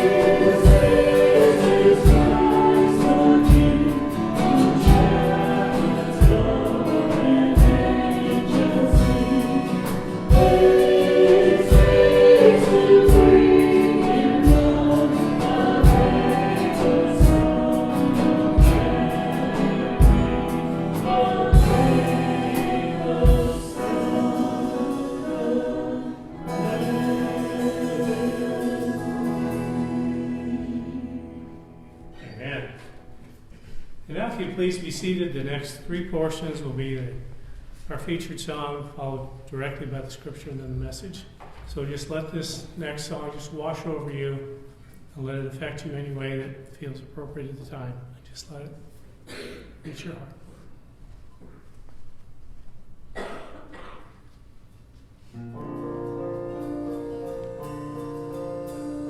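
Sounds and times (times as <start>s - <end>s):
group singing worship song: 0.0s - 32.2s
kick drum beat: 0.4s - 1.4s, 2.0s - 2.7s, 3.5s - 4.0s, 4.8s - 8.2s, 9.0s - 9.5s, 10.3s - 11.0s, 11.7s - 13.7s, 14.4s - 15.0s, 15.6s - 17.7s, 18.6s - 20.7s, 21.4s - 22.3s, 23.1s - 23.8s.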